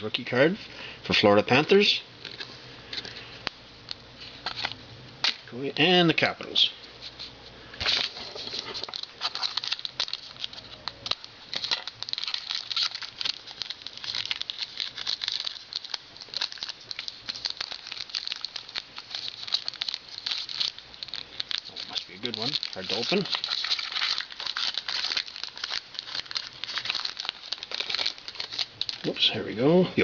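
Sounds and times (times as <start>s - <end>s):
wrapper crinkling and tearing: 4.2s - 5.4s, 7.1s - 29.6s.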